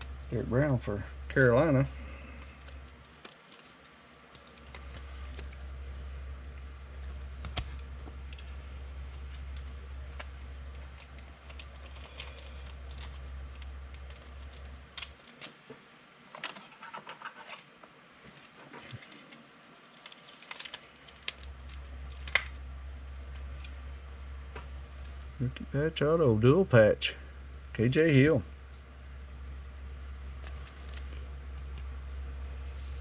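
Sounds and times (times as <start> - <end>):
low steady hum: 0.0 - 33.0
cards and plastic clicking: 2.2 - 5.7, 7.0 - 15.6, 18.3 - 22.6.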